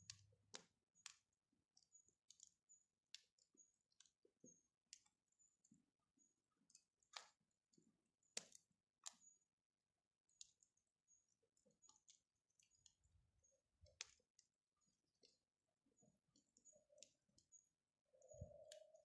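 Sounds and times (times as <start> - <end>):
wood fire crackling and popping: 0.0 - 5.2, 6.6 - 9.4, 11.7 - 19.0.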